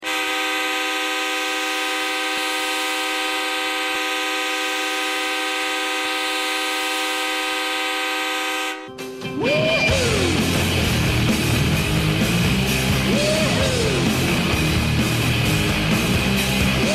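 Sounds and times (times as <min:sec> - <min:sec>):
goal horn blast: 0:00.0 - 0:09.0.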